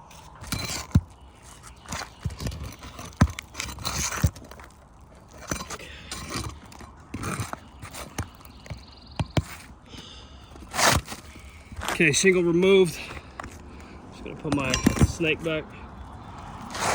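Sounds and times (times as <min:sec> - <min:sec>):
shingles scraping and crackling: 0:00.0 - 0:16.9.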